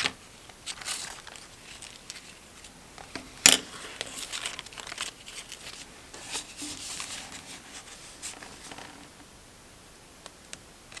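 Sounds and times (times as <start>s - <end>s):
light ticks of handling paper: 0.0s - 9.2s
quiet hiss: 0.0s - 11.0s.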